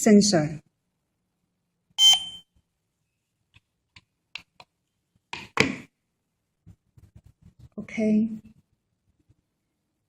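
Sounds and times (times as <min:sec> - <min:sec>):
high electronic beep: 0:02.0 - 0:02.4.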